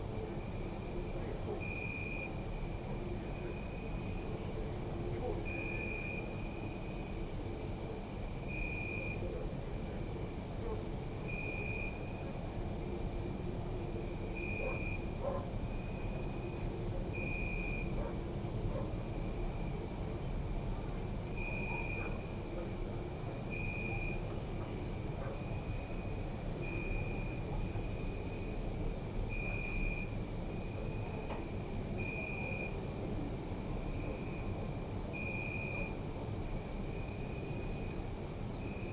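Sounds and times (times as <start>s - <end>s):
crickets trilling: 0.0s - 38.9s.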